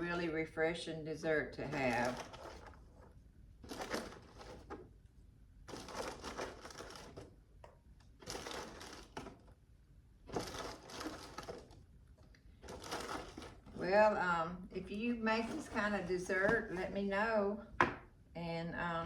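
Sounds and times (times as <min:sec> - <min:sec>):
scraping crunching kitchen noise: 0:08.2 - 0:09.5, 0:10.3 - 0:11.8, 0:12.6 - 0:17.0.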